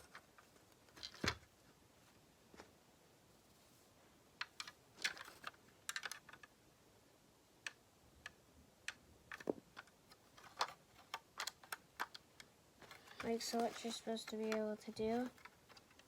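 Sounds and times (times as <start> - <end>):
plastic toy bricks clicking: 4.4 - 6.5, 7.6 - 16.0.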